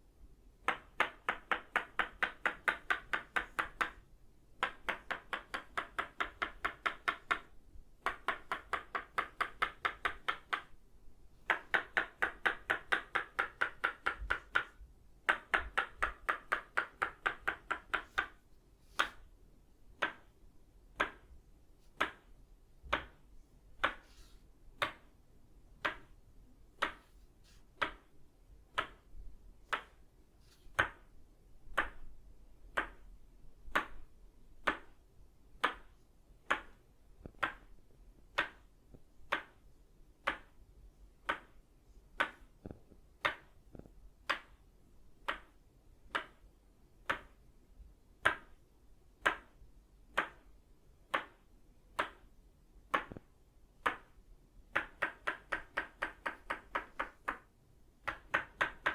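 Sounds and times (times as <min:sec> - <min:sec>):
wooden mallet knocking a peg: 0:11.5 - 0:18.4.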